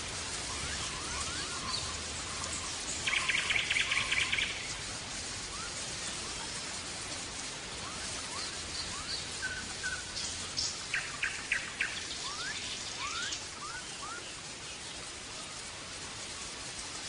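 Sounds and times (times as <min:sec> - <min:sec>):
background hiss: 0:00.0 - 0:17.0
goldfinch singing: 0:00.5 - 0:04.7, 0:08.3 - 0:14.4.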